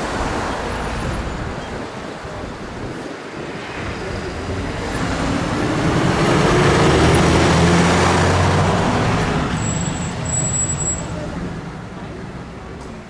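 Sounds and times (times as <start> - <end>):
heavy vehicle driving past: 3.6 - 13.0.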